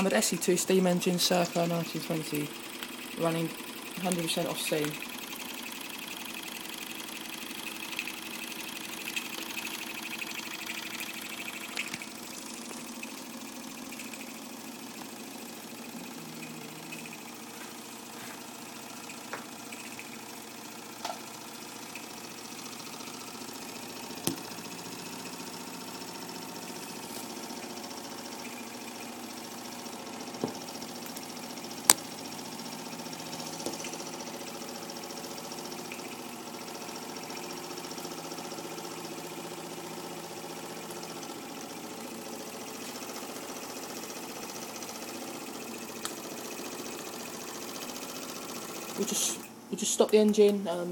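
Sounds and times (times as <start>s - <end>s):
toy steam engine running: 0.0s - 50.9s
sharp clicks: 6.5s - 13.0s.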